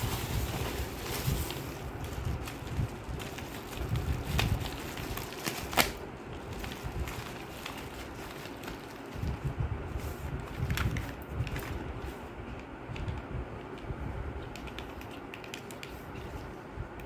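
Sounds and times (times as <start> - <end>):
packaging crinkling and clicking: 0.0 - 9.4, 12.6 - 16.3.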